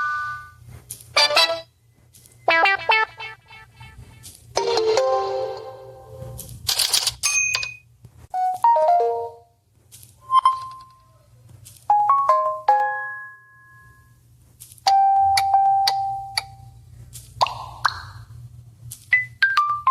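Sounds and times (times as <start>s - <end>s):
phone notification chimes: 8.4s - 9.4s.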